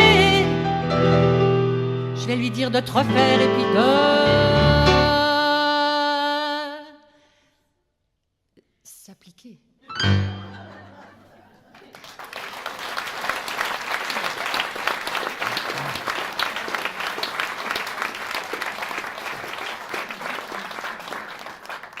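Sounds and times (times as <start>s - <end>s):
audience applauding: 11.6s - 22.0s.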